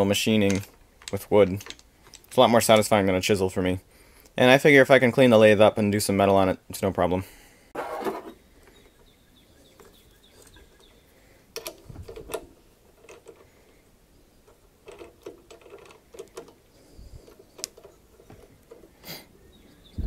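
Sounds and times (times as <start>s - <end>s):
handling clicks and knocks: 0.0s - 3.2s, 7.8s - 20.0s.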